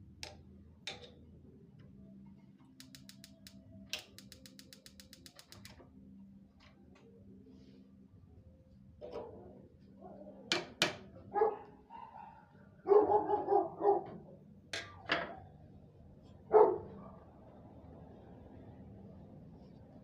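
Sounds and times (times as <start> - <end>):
sharp clicks: 2.8 - 5.8
dog barking: 11.3 - 14.3, 16.5 - 17.3.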